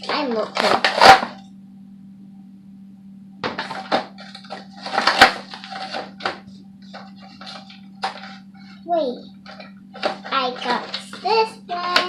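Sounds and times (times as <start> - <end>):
toy packaging crackling and rustling: 3.6 - 6.4, 9.5 - 11.3.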